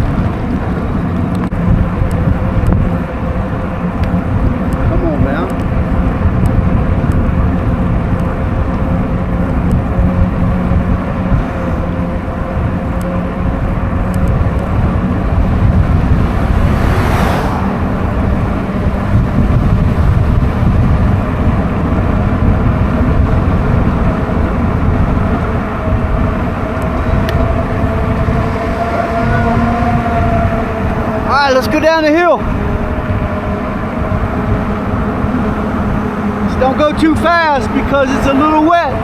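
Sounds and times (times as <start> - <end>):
wind buffeting microphone: 0.0 - 39.0
electric motor whine: 0.1 - 39.0
car passing on wet road: 15.6 - 19.3.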